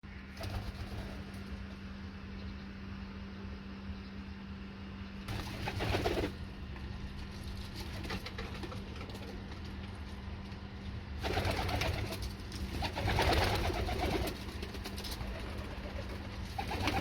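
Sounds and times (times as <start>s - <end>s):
steady low hum: 0.0s - 17.0s
pigeons cooing: 12.8s - 17.0s.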